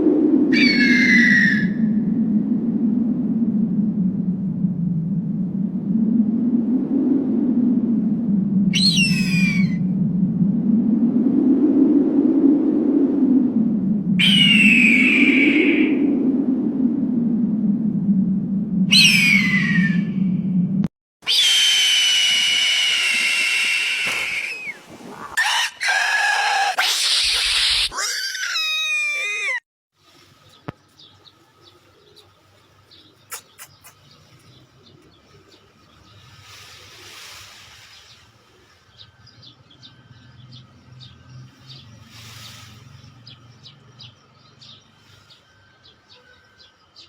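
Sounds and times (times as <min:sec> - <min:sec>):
loud bird calls: 0:00.6 - 0:01.8, 0:08.8 - 0:09.8, 0:19.0 - 0:20.0, 0:30.5 - 0:36.2
faint bird chirps: 0:30.4 - 0:36.4, 0:37.9 - 0:47.0.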